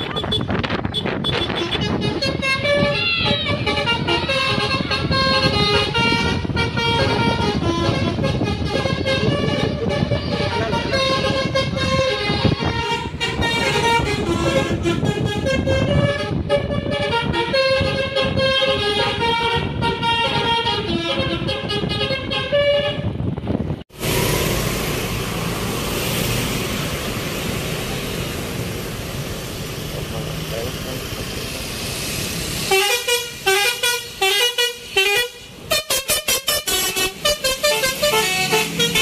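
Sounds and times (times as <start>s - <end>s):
multi-tone horn melody: 0.0s - 23.3s, 32.6s - 39.0s
steady rushing noise: 23.1s - 33.5s.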